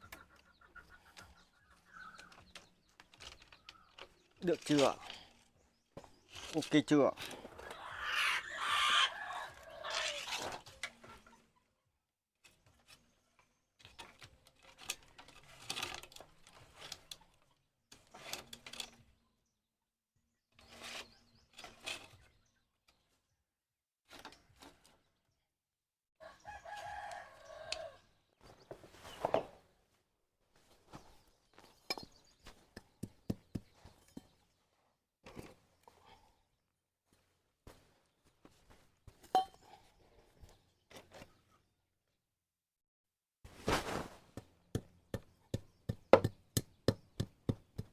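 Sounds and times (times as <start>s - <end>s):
chickens calling: 0.0s - 2.4s, 7.5s - 10.2s
rooster crowing: 26.3s - 28.0s.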